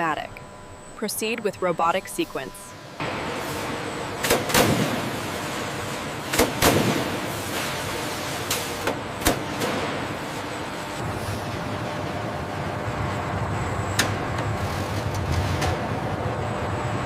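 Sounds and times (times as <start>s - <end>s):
sharp machine knocks: 6.3s - 7.2s.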